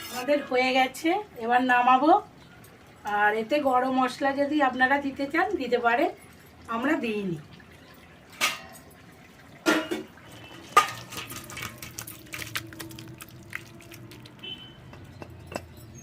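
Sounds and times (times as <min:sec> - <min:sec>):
metal cookware clanking: 0:08.3 - 0:12.6.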